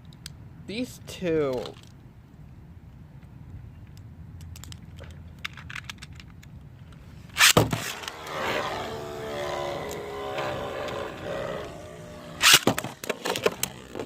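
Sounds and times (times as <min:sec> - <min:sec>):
spinning tops whirring and scraping: 0:07.3 - 0:14.0
spinning tops clicking: 0:07.4 - 0:13.0
sharp rip of tops launching: 0:07.4 - 0:13.6.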